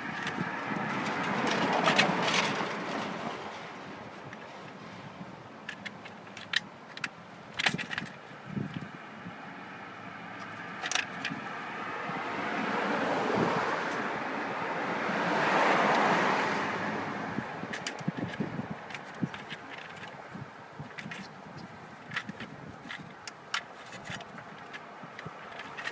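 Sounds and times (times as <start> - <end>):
clicks and clatter of tools: 0.0 - 4.8, 5.6 - 9.0, 10.4 - 11.5, 17.6 - 25.9
vehicle passing: 9.2 - 19.0.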